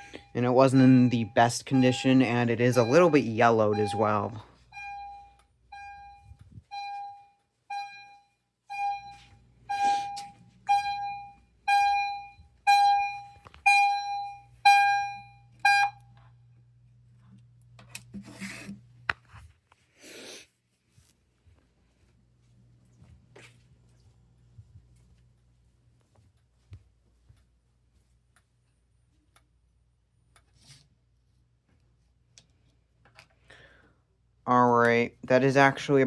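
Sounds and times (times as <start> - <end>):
fire alarm chimes: 0.0 - 16.1.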